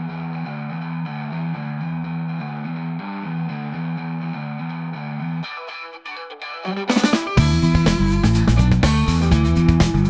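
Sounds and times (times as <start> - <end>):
guitar instrumental music: 2.6 - 10.0.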